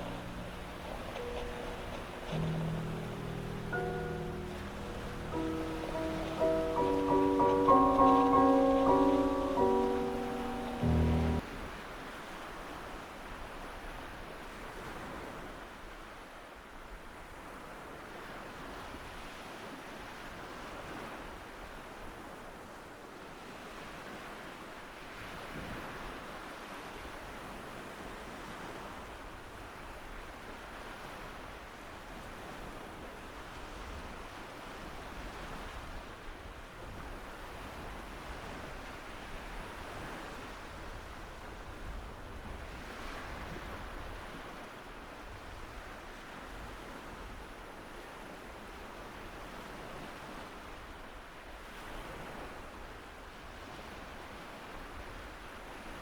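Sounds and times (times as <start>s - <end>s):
surf: 0.0s - 11.4s.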